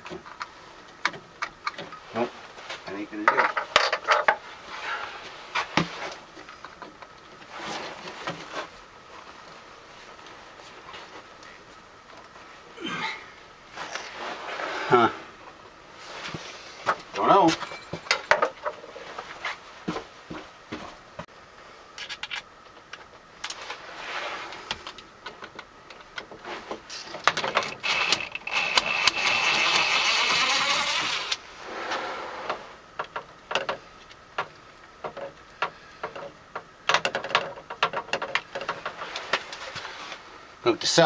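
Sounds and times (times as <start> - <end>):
cordless drill motor running: 27.8 - 31.4.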